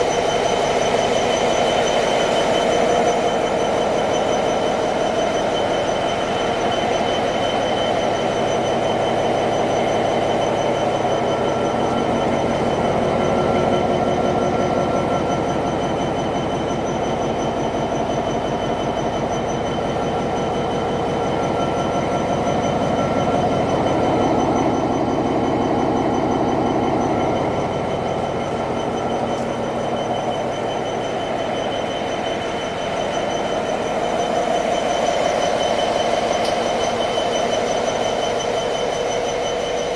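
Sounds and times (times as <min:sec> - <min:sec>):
diesel locomotive engine running: 0:00.0 - 0:39.9.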